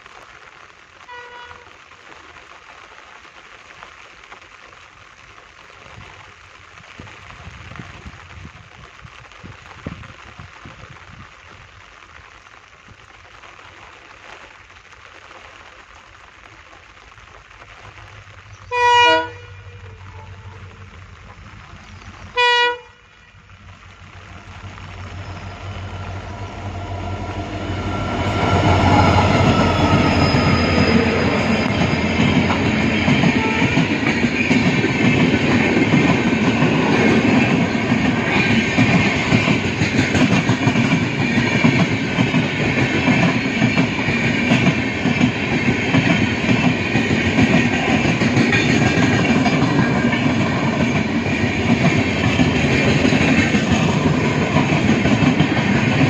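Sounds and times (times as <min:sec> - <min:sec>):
locomotive horn blasts: 0:01.1 - 0:01.7, 0:18.7 - 0:20.8, 0:22.4 - 0:23.1
train rumbling past: 0:18.2 - 0:56.0.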